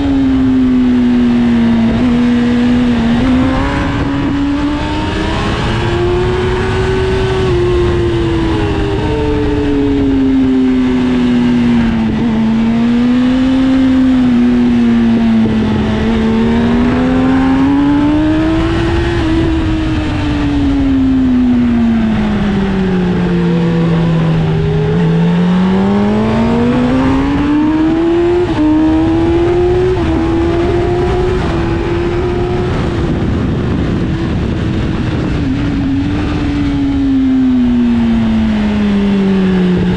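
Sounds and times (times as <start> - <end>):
motorcycle engine revving: 0.0 - 39.9
wind rush: 0.0 - 39.9.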